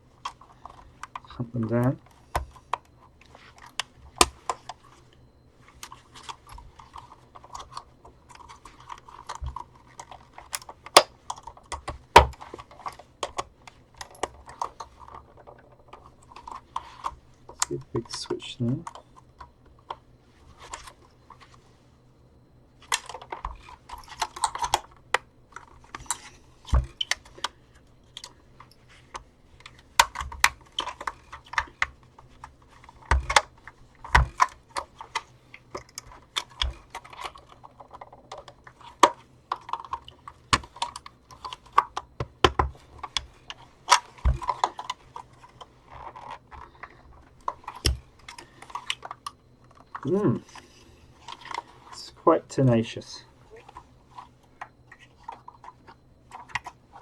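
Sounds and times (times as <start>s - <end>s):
plastic casing clicking and creaking: 22.8s - 52.2s, 53.4s - 57.0s.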